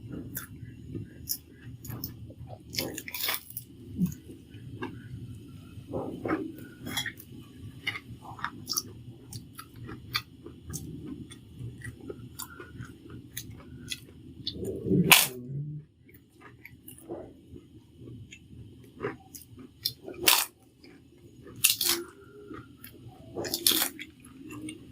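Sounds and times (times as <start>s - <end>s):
person chewing with wet mouth clicks: 6.2s - 15.4s, 16.1s - 24.9s.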